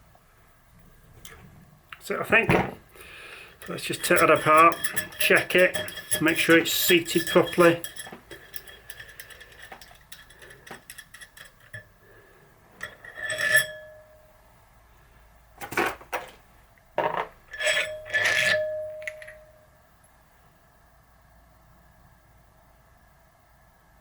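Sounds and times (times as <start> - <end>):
light metal clicks and clinks: 3.6 - 11.9.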